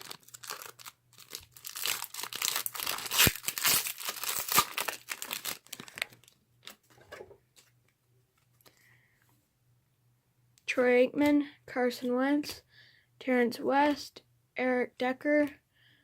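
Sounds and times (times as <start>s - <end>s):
wrapper tearing and crinkling: 0.0s - 6.8s.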